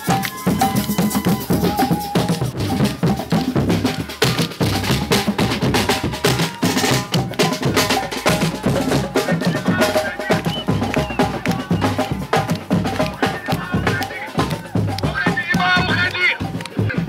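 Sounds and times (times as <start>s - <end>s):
music with drum and percussion beat: 0.0s - 17.0s.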